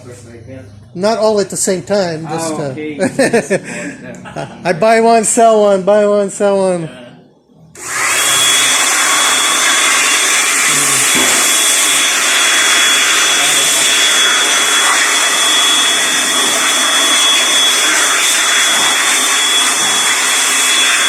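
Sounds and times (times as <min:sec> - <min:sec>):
blower rushing air with whistle: 0:07.8 - 0:21.0.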